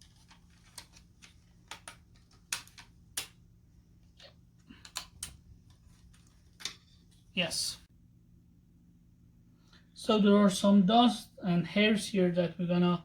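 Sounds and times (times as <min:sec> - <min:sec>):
plastic parts clicking and tapping: 0:00.0 - 0:03.4, 0:04.0 - 0:07.1.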